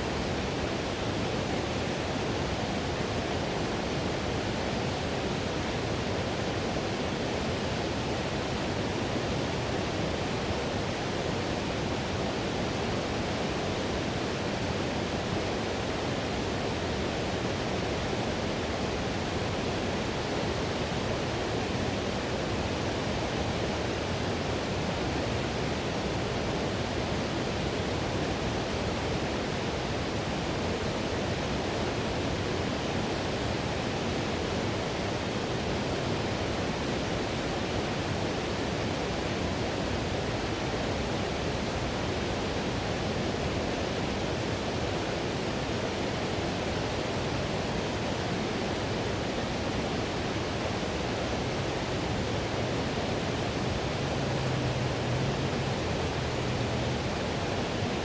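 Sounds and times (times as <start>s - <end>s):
whitewater rushing: 28.8s - 58.0s.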